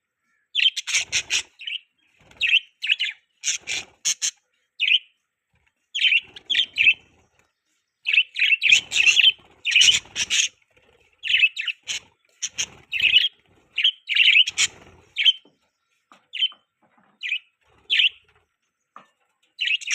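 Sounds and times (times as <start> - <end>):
budgerigars chirping: 0.6 - 5.1, 5.9 - 7.2, 8.0 - 10.6, 11.2 - 15.5, 17.2 - 18.2, 19.6 - 19.9.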